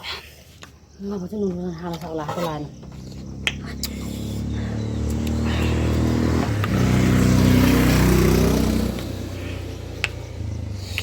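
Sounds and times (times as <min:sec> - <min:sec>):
vehicle engine passing: 0:02.4 - 0:11.0.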